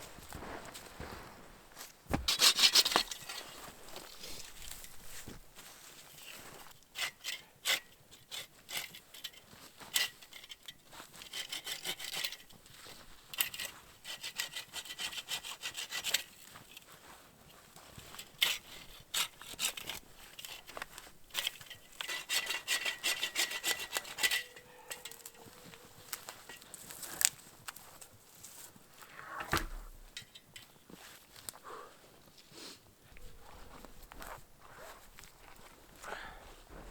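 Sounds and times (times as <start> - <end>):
hand saw cutting wood: 2.1 - 5.0, 11.2 - 12.4, 13.5 - 16.4, 18.2 - 27.1.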